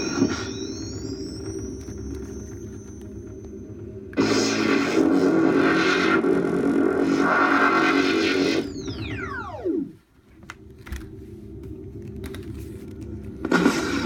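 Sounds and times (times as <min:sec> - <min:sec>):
descending electronic whine: 0:00.0 - 0:14.0
low electronic hum: 0:00.0 - 0:14.0
electronic buzzing: 0:04.2 - 0:10.0.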